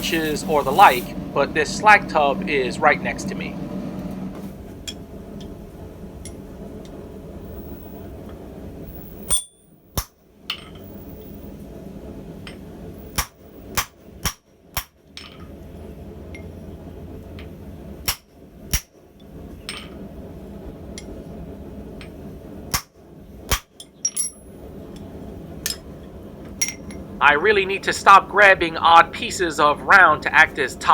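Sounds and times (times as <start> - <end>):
low background rumble: 0.0 - 13.8, 15.4 - 30.9
hammer striking steel on anvil: 9.2 - 10.8.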